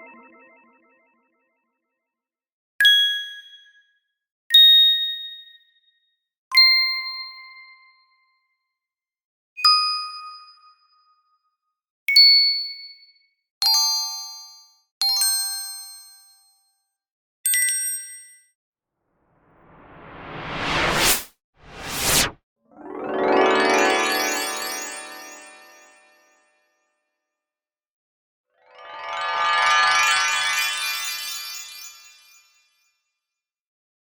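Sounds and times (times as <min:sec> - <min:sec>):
bright sparkling chime dings: 0:22.8 - 0:26.2.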